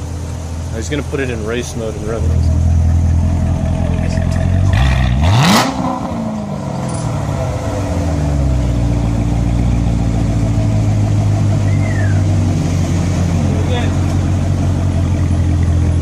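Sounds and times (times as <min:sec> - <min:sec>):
car engine revving and droning: 0:02.1 - 0:16.0.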